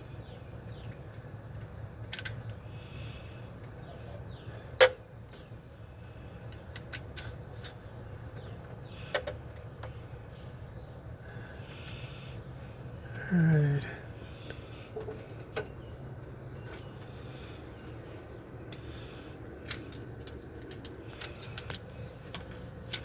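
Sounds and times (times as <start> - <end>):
steady low hum: 0.0 - 23.0
metal tools clinking: 19.6 - 23.0.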